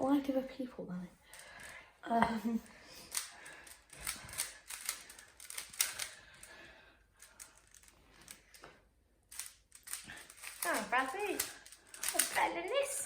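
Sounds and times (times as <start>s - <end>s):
puzzle cube plastic clicking: 3.0s - 6.2s, 9.3s - 13.0s.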